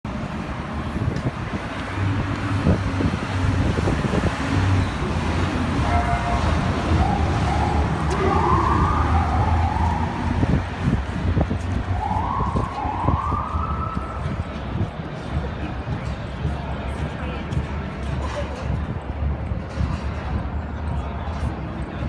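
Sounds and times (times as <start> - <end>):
city traffic rumble: 0.0 - 22.0
emergency vehicle siren: 2.0 - 14.9.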